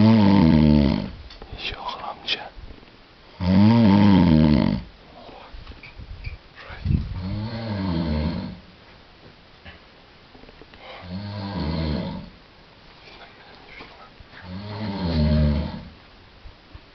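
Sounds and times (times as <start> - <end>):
person snoring: 0.0 - 1.2, 3.4 - 4.9, 7.2 - 8.6, 10.8 - 12.3, 14.4 - 15.9.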